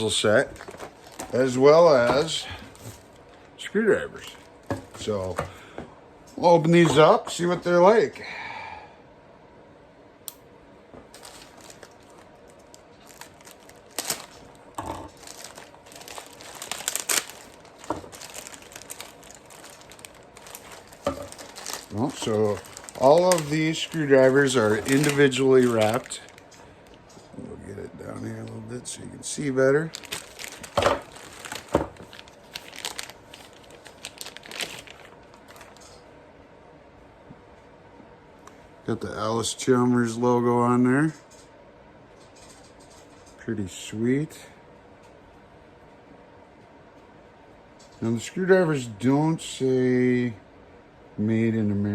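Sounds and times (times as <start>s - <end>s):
packaging crinkling and tearing: 0.0s - 3.2s, 11.1s - 27.0s, 29.3s - 36.0s.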